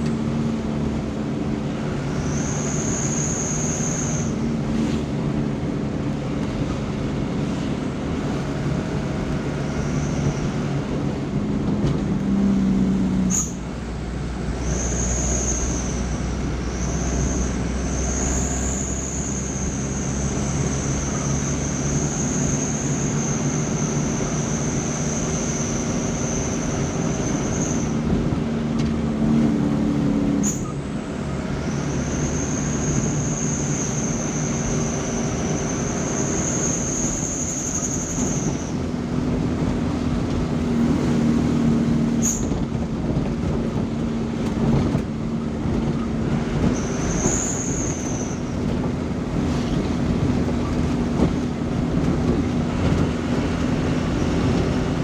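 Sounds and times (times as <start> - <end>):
road noise: 0.0 - 55.0
vehicle engine drone: 0.0 - 55.0
high-pitched whine: 1.7 - 4.7.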